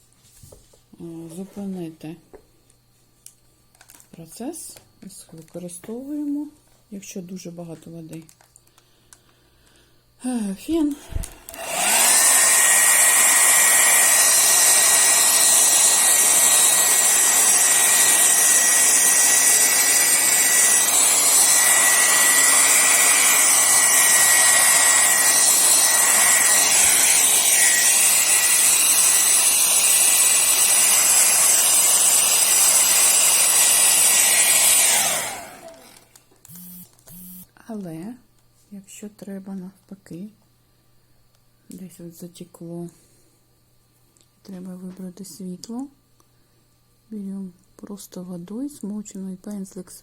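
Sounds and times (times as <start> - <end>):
hair dryer blowing: 10.8 - 37.4.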